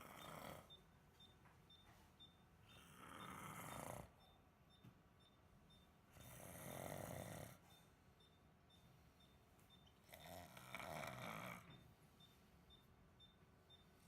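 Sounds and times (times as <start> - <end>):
person snoring: 0.0 - 0.7, 2.9 - 4.1, 6.4 - 7.6, 10.1 - 11.7.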